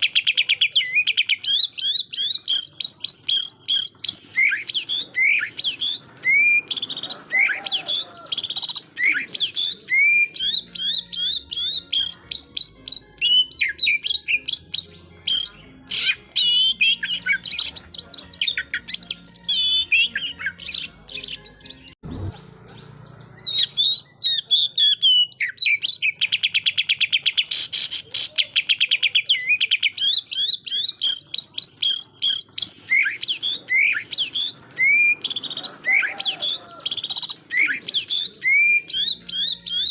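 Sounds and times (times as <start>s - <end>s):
bird singing whistles and chirps: 0.0s - 39.9s.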